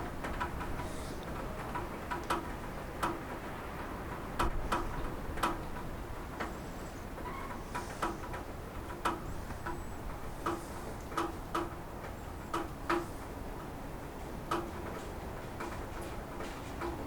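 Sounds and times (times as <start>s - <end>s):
light rain patter: 0.0s - 17.0s
heavy raindrops ticking on roof: 0.1s - 6.6s.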